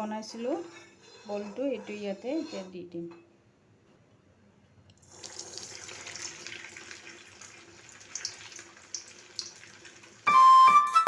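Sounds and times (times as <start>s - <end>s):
food sizzling in hot oil: 5.1s - 10.3s.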